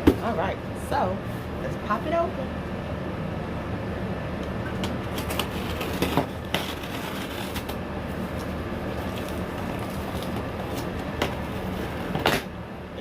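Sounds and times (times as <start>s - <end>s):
steady background hum: 0.0s - 13.0s
packaging crinkling: 5.1s - 12.5s.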